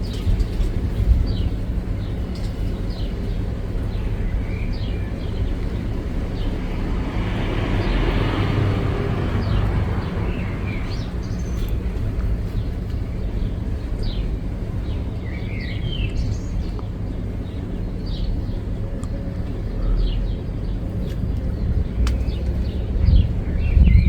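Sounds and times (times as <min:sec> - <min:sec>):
birds chirping: 0:00.0 - 0:24.0
steady low rumble: 0:00.0 - 0:24.0
broad rushing noise: 0:05.2 - 0:12.6.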